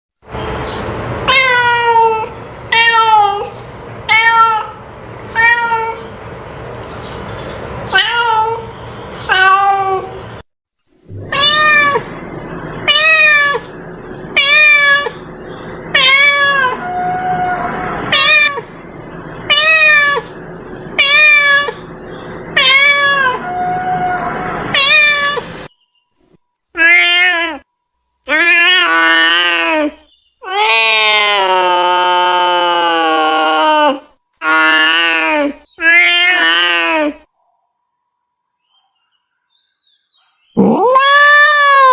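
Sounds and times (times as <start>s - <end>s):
cat meowing: 1.3s - 6.1s, 7.9s - 8.7s, 9.3s - 10.2s, 11.2s - 12.2s, 12.8s - 13.7s, 14.4s - 15.2s, 15.9s - 18.7s, 19.5s - 20.3s, 21.0s - 21.9s, 22.5s - 25.5s, 26.8s - 27.7s, 28.3s - 37.2s, 40.6s - 41.9s.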